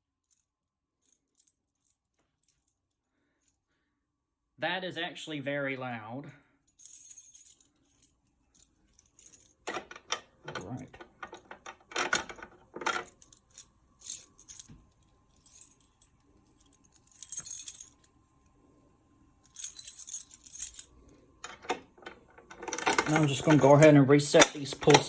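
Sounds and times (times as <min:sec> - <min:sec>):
keys jangling: 0:06.7 - 0:18.1, 0:19.5 - 0:25.0.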